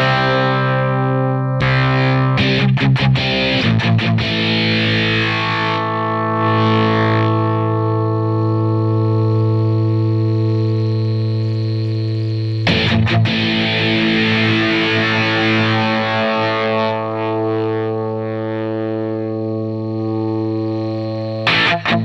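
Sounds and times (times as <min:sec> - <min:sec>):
distorted electric guitar strums: 0:00.0 - 0:22.0
electric guitar chord ringing: 0:00.0 - 0:22.0.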